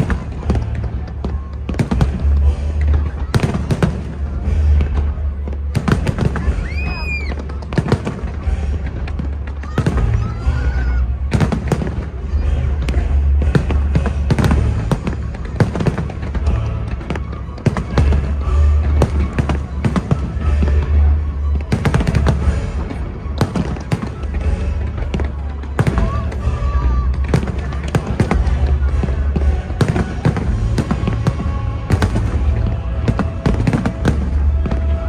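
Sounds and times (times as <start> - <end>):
firework bangs and crackles: 0.0 - 35.0
music: 0.0 - 35.0
low rumble: 28.2 - 35.0.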